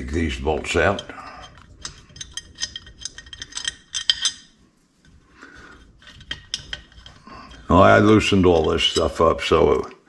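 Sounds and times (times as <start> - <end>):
metal clicks of bolts and tools: 0.7 - 4.6, 6.0 - 9.2.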